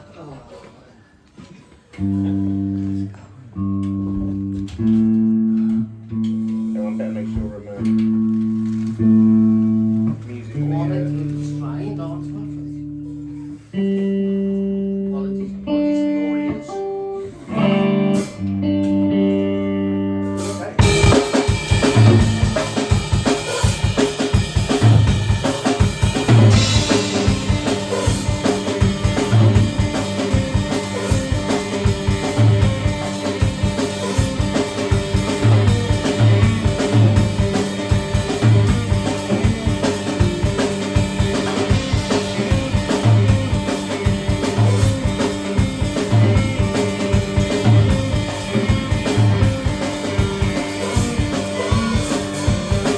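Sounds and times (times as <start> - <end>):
guitar chords ringing: 2.0 - 52.9
drums playing steady beat: 20.4 - 52.9.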